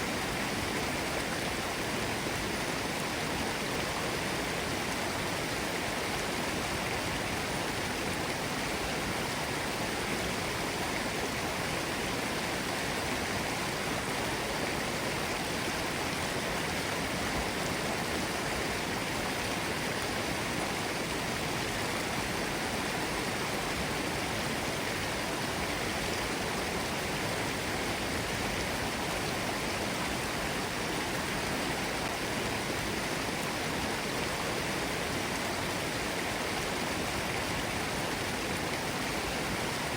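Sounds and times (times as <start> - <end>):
stream rushing over rocks: 0.0 - 39.9.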